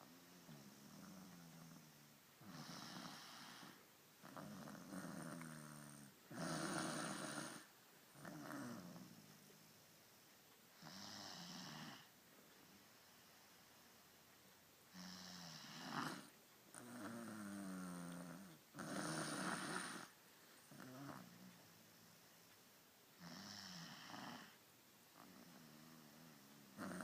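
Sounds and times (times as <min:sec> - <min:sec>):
person snoring: 0:00.1 - 0:09.5, 0:14.9 - 0:20.1, 0:20.7 - 0:21.5, 0:23.2 - 0:24.6, 0:25.2 - 0:27.0.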